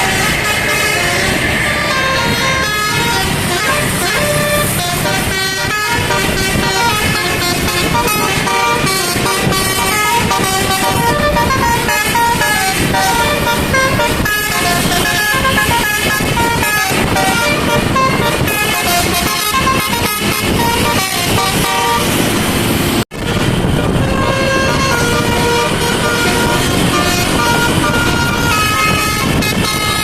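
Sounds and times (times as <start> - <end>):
musical air horn melody: 0.0 - 22.3, 23.2 - 30.0
vehicle traffic noise: 0.0 - 30.0.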